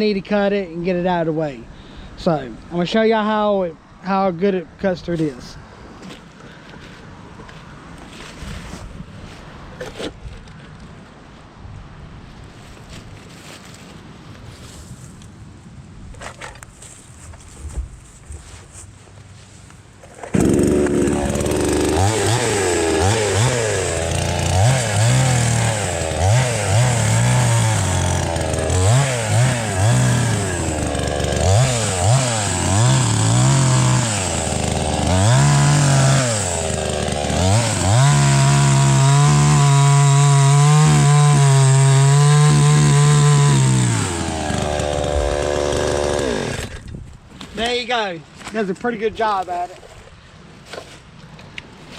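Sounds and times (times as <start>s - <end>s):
chainsaw cutting log: 20.1s - 47.0s.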